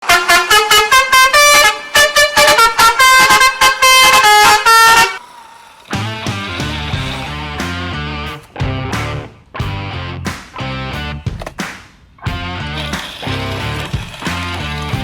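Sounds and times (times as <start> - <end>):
horn-like tune: 0.0 - 7.3
music with low bass: 6.9 - 11.5, 12.3 - 13.8.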